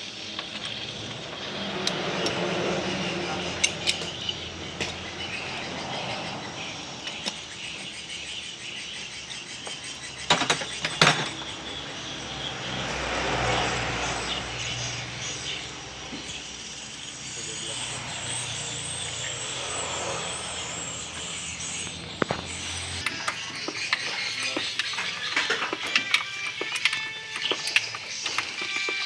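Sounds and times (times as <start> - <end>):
workshop background noise: 0.0 - 29.0
metal tools clinking and knocking: 0.2 - 7.5, 9.7 - 11.8, 21.4 - 29.0.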